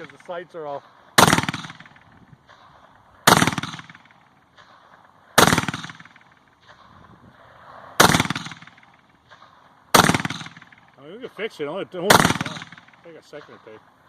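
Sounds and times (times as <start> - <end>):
rifle shots: 1.2 - 7.0, 7.9 - 11.0, 12.0 - 13.6.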